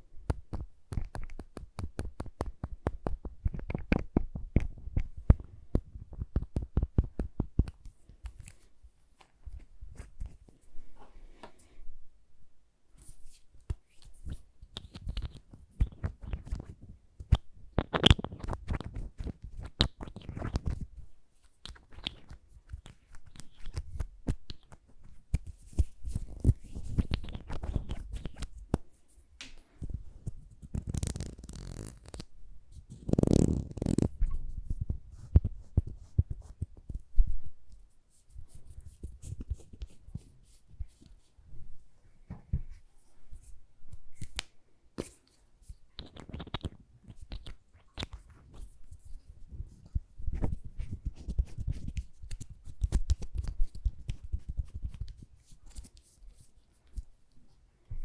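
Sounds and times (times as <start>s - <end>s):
soft crackling rubbing: 13.0s - 44.4s.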